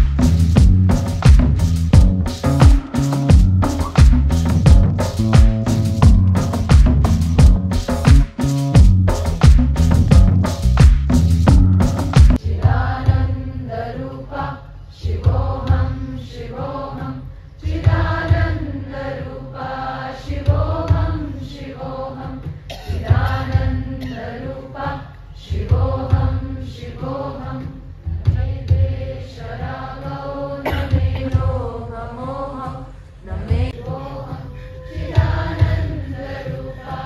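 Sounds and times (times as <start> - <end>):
deep low beat: 0.0 - 13.2
musical accompaniment: 0.0 - 13.3
group chanting: 12.3 - 37.0.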